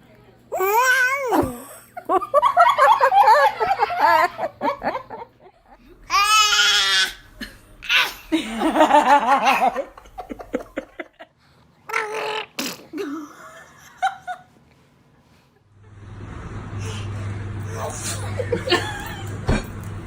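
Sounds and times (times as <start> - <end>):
high wavering laugh: 7.3 - 11.3, 18.0 - 19.4.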